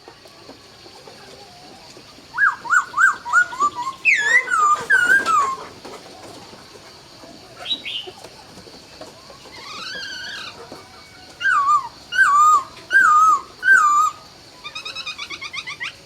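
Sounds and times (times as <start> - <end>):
bird whistling song: 2.3 - 5.7, 7.6 - 8.1, 11.4 - 16.0.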